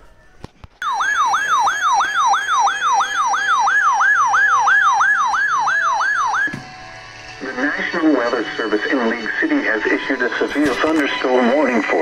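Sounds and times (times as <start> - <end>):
electronic siren alert: 0.8 - 10.4.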